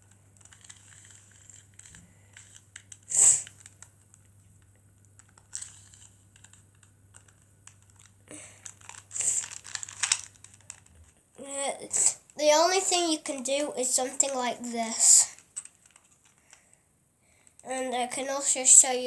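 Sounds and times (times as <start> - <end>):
faint low hum: 0.0 - 19.0
puzzle cube layers clicking: 0.4 - 3.9, 5.1 - 11.0.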